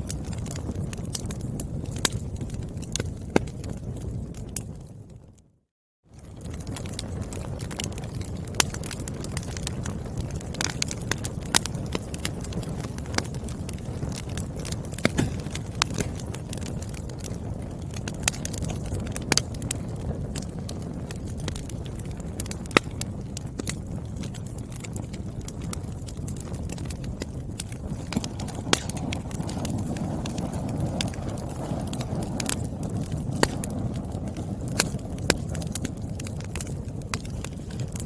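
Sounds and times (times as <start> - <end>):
wood fire crackling: 6.2 - 38.0
sharp pops from burning logs: 15.0 - 19.8, 25.9 - 38.0.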